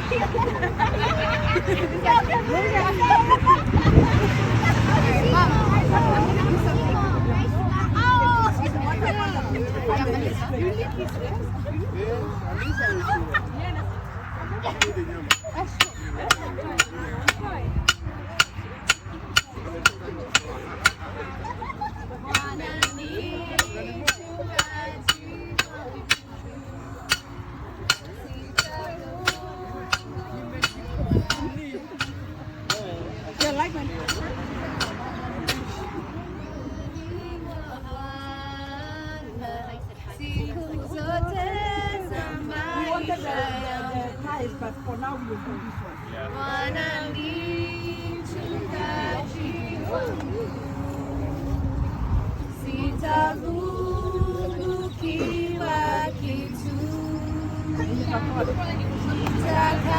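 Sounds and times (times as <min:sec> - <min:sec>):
faint background voices: 0:00.0 - 0:59.9
sharp metallic knocks: 0:14.8 - 0:21.0, 0:27.1 - 0:35.6
woman singing a hymn: 0:22.1 - 0:59.9.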